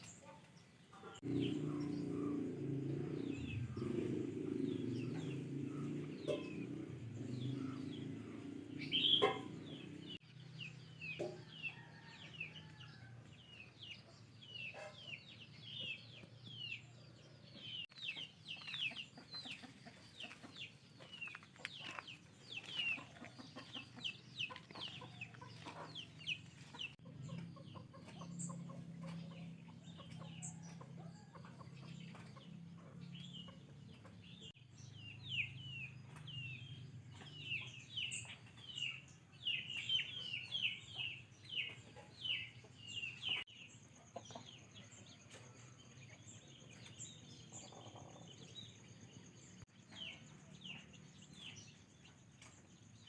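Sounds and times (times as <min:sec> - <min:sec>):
birds chirping: 0:00.0 - 0:53.0.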